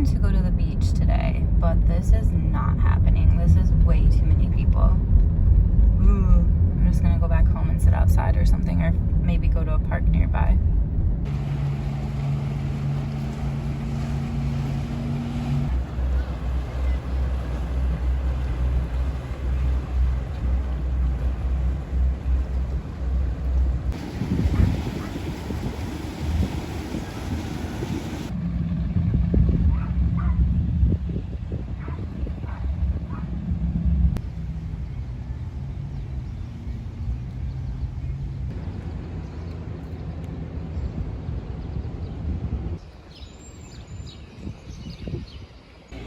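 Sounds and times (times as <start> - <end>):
car engine hum: 0.0 - 31.2
wind buffeting microphone: 0.0 - 39.4, 40.1 - 46.0
road noise: 0.0 - 46.0.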